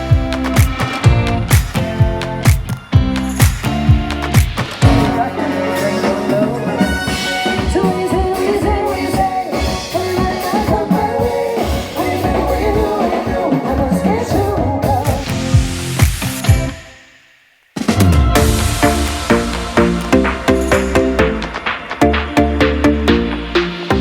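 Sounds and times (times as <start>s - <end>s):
band with drum beat: 0.0s - 16.9s, 17.8s - 24.0s
person singing: 4.8s - 15.6s.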